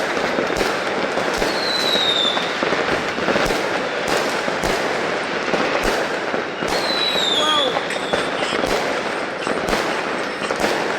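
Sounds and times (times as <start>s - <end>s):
fireworks crackling: 0.0s - 10.9s
sharp firework bangs: 0.0s - 10.9s
falling firework whistle: 1.3s - 3.6s, 6.6s - 8.8s.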